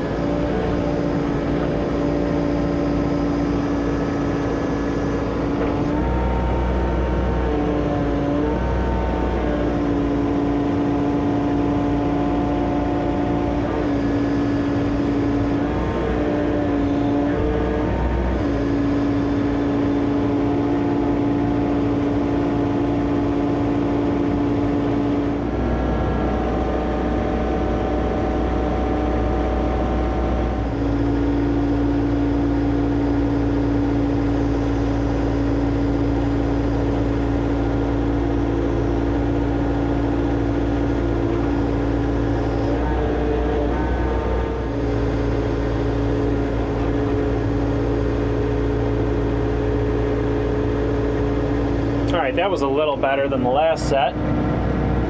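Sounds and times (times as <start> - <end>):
excavator diesel engine running: 0.0 - 55.0.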